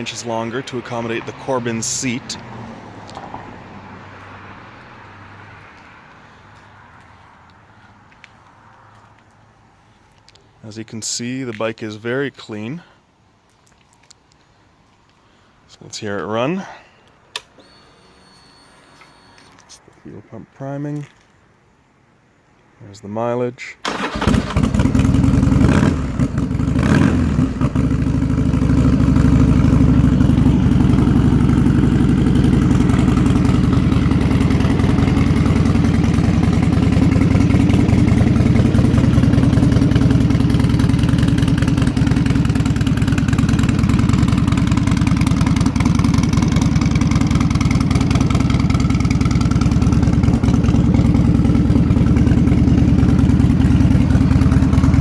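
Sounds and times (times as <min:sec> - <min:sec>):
motorcycle engine idling: 0:24.6 - 0:55.0.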